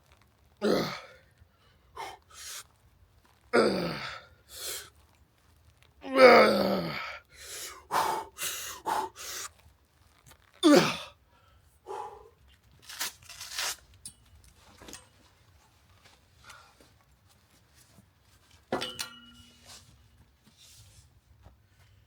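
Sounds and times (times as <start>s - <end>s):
man groaning: 0.6s - 1.2s, 3.6s - 4.2s, 6.0s - 7.2s, 10.6s - 11.1s
man breathing hard: 1.0s - 2.6s, 6.9s - 9.5s, 11.3s - 12.4s.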